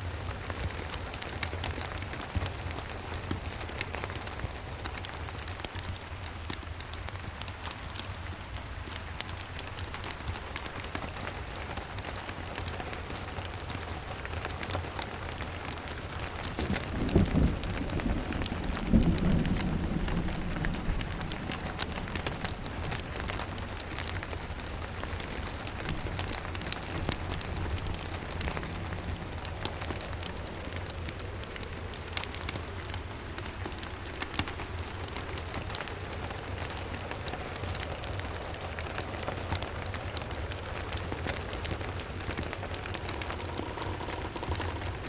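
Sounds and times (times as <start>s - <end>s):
steady rain: 0.0s - 45.0s
thunder rumble: 16.6s - 33.0s.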